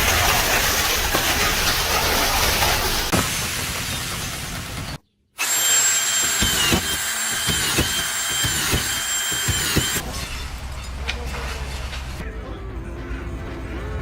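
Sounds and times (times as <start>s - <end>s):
electric drill whining: 5.4s - 10.0s.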